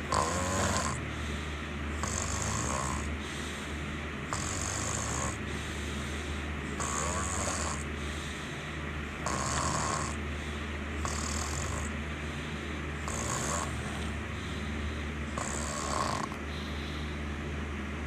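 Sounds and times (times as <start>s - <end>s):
person snoring: 0.0s - 3.7s, 4.3s - 5.8s, 6.7s - 8.0s, 9.2s - 10.2s, 11.0s - 12.0s, 13.0s - 14.7s, 15.3s - 17.1s
constant low hum: 0.0s - 18.0s.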